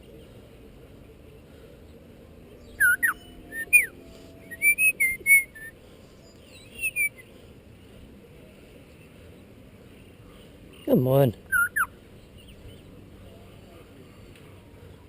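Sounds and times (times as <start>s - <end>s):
parrot whistling: 2.8s - 3.9s, 4.5s - 5.7s, 11.5s - 11.9s.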